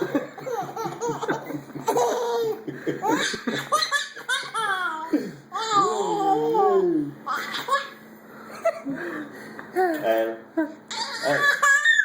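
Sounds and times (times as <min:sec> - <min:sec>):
baby laughing: 0:00.2 - 0:06.0, 0:07.3 - 0:08.0, 0:10.9 - 0:12.0.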